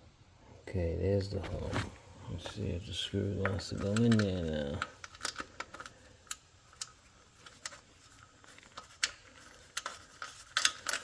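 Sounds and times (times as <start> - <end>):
metal parts clicking and tapping: 3.4 - 11.0.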